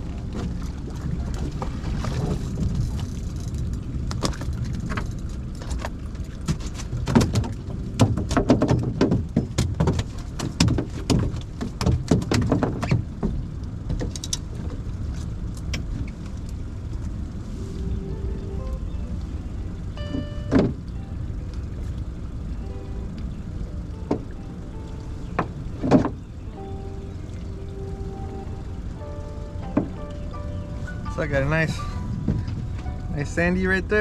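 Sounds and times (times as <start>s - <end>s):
low rumble: 0.0s - 7.0s, 13.0s - 34.0s
clattering knocks and rattles: 1.5s - 16.2s, 25.4s - 26.3s.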